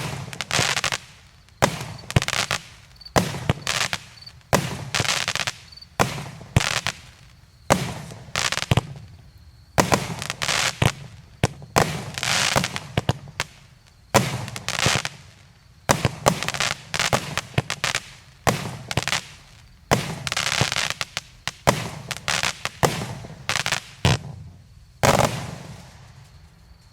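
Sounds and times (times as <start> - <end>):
firework hiss: 0.0 - 9.2, 9.8 - 26.9.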